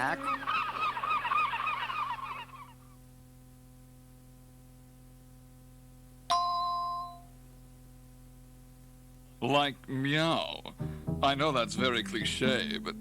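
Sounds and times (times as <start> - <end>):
honking: 0.0 - 2.8
low tape hum: 0.0 - 13.0.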